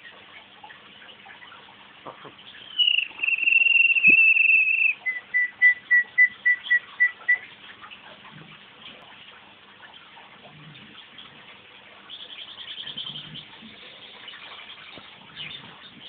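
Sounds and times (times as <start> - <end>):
canary trilling: 2.6 - 7.5
whistled notes: 2.6 - 7.5.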